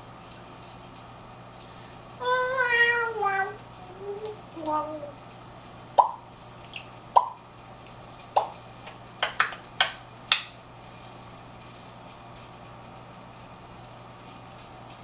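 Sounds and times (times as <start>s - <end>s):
parrot making popping clicks: 6.0s - 7.4s, 8.4s - 10.6s.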